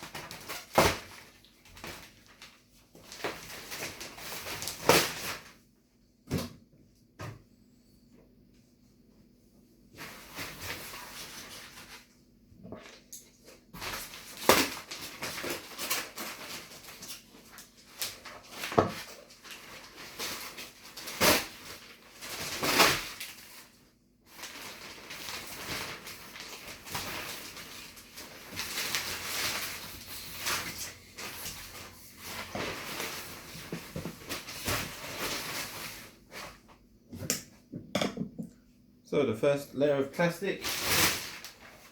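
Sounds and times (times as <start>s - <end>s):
plastic wrapping crinkling: 0.0s - 5.6s, 10.0s - 12.1s, 12.8s - 36.7s, 40.4s - 41.9s.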